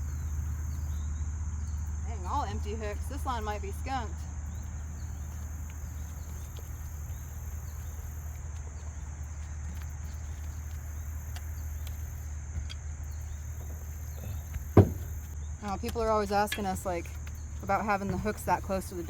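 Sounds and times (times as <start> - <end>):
insects trilling: 0.0 - 19.0
faint ticks: 4.2 - 19.0
sharp knock: 14.8 - 15.1.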